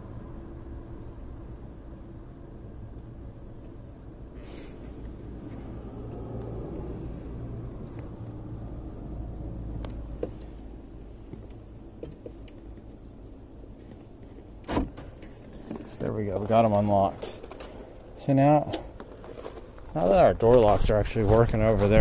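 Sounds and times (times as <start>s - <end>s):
steady low rumble: 0.0s - 18.3s.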